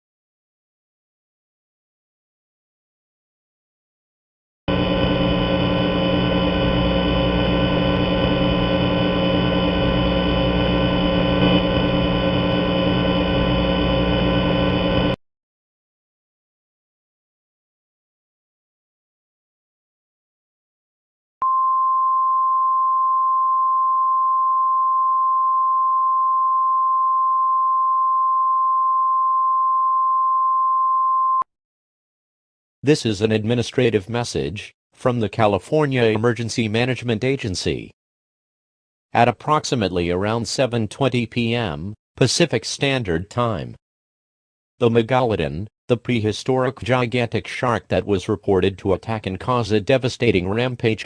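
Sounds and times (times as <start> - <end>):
loud steady droning tone: 4.7 - 15.2.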